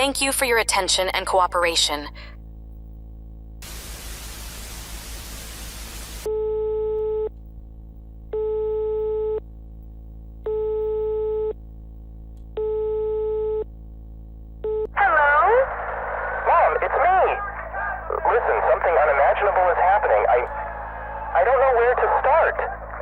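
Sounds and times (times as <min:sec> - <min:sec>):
static hiss: 0:03.6 - 0:06.3, 0:15.2 - 0:20.0.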